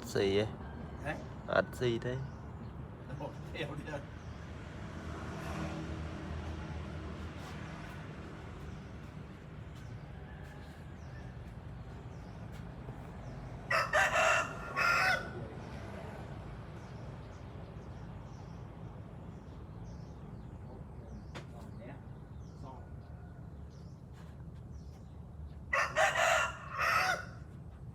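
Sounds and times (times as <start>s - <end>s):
rooster crowing: 10.0s - 11.6s, 13.6s - 15.7s, 25.7s - 27.5s.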